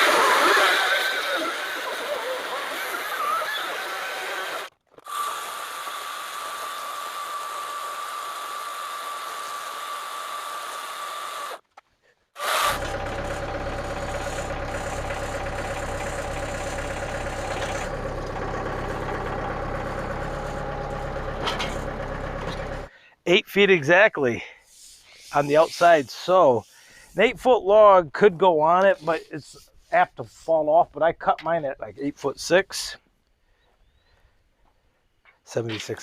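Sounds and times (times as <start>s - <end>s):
tractor engine idling: 12.4s - 22.9s
steady hiss: 24.6s - 27.3s.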